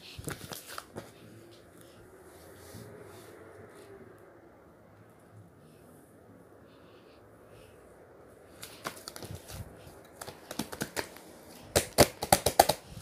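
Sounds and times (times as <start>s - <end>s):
sharp clicks and taps: 10.0s - 12.8s.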